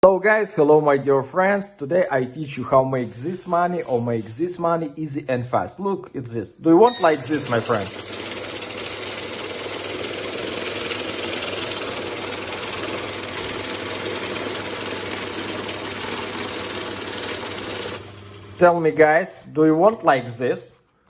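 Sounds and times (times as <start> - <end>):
machine whirring and rattling: 7.2 - 18.6.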